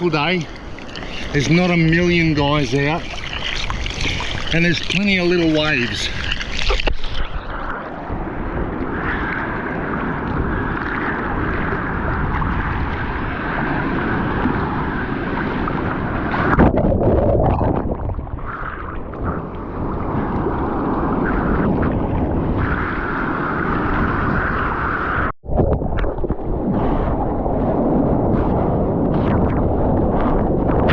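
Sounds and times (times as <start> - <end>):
ocean surf rushing: 0.0 - 17.6
wind buffeting microphone: 0.0 - 30.9.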